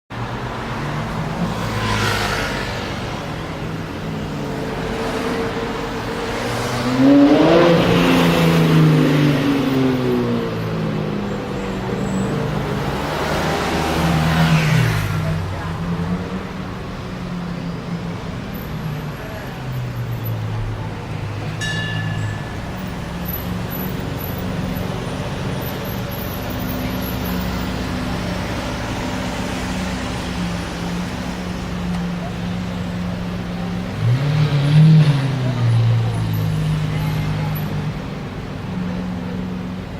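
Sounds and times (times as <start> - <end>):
sports car engine revving: 4.2 - 11.3, 22.8 - 39.7.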